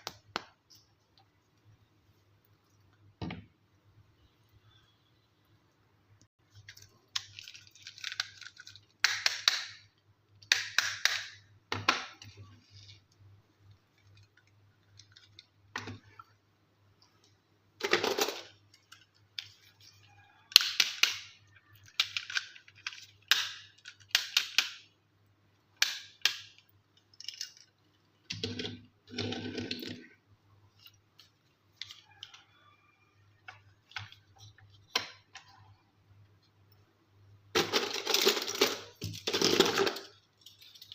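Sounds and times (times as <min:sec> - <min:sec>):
packaging crinkling: 0:06.6 - 0:08.9
plastic toy pieces clicking: 0:20.5 - 0:24.9.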